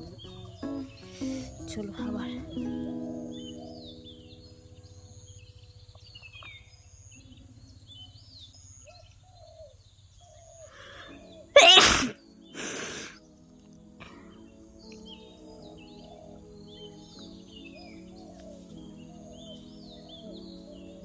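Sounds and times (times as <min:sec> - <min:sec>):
breathy burst of air: 0:01.1 - 0:01.6
person sneezing: 0:11.6 - 0:13.1.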